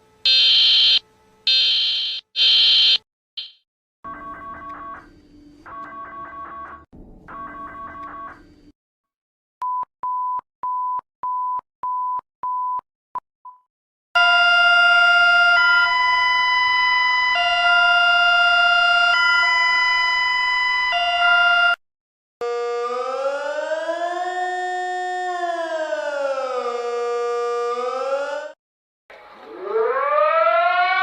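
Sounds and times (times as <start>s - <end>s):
alternating alarm tone chords: 0.3s - 3.6s.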